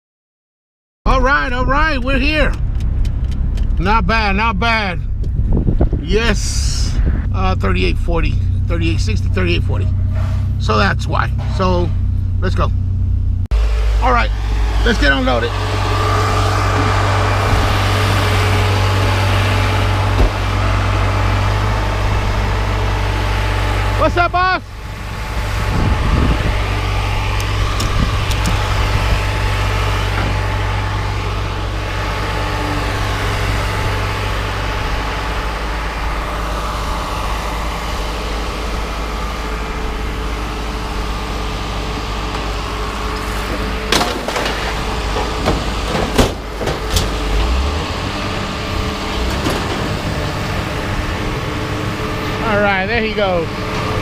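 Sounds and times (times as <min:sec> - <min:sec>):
heavy engine running: 0:01.1 - 0:54.0
metal knocks and clanks: 0:42.3 - 0:48.0, 0:49.1 - 0:50.4.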